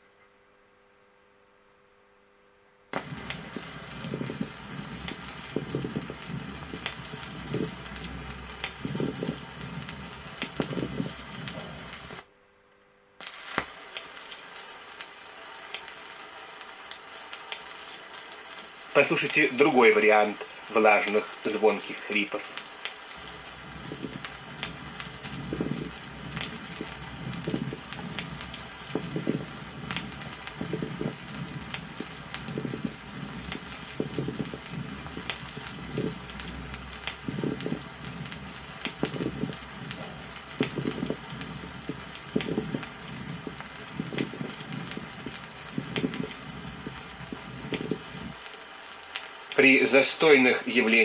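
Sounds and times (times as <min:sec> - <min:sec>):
vinyl record hiss: 0:00.0 - 0:51.0
wet crackles in chest: 0:02.9 - 0:12.2, 0:22.1 - 0:49.6.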